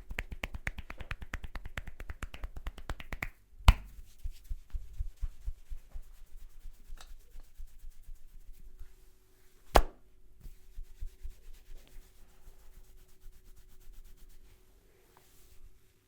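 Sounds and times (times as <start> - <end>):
hands tapping on head: 0.0 - 6.1.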